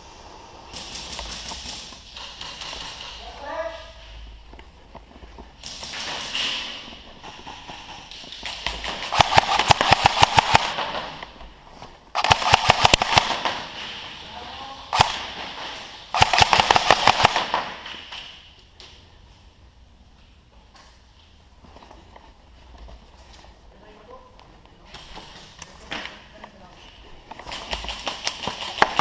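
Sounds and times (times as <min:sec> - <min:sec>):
airsoft guns firing bursts: 0:00.7 - 0:03.3, 0:05.6 - 0:11.2, 0:12.1 - 0:14.0, 0:14.9 - 0:18.2, 0:27.5 - 0:29.0.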